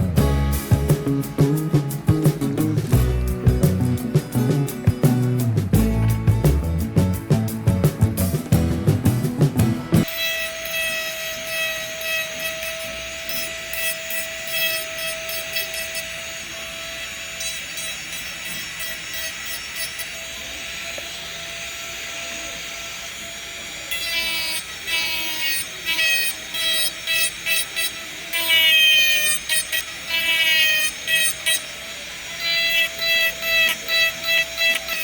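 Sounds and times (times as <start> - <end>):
small motor whining: 10.0 - 35.0.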